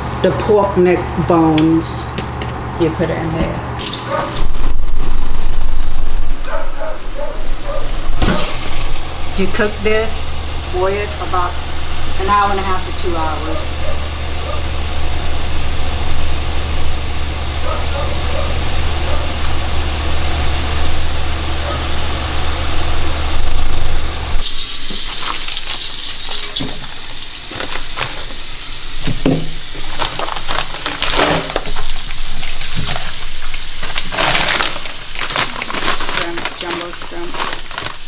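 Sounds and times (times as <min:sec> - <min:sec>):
steady low hum: 0:04.4 - 0:24.4
food sizzling in a pan: 0:08.1 - 0:17.6, 0:23.6 - 0:38.0.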